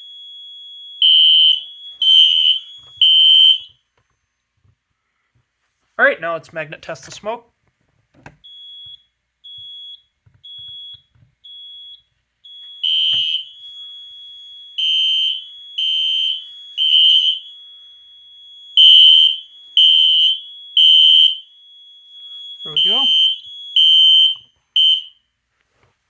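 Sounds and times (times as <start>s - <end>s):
steady high alarm tone: 0.0s - 3.8s, 8.5s - 25.2s
alarm panel beeping: 1.0s - 3.7s, 8.4s - 25.2s.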